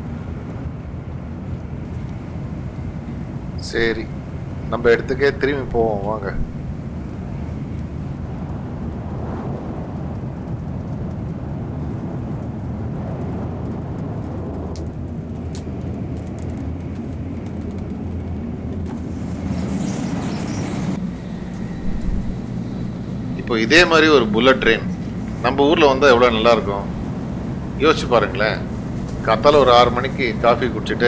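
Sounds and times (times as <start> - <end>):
train interior low rumble: 0.0 - 31.0
faint clicks: 1.5 - 4.7, 13.1 - 18.8
hiss: 19.1 - 22.3.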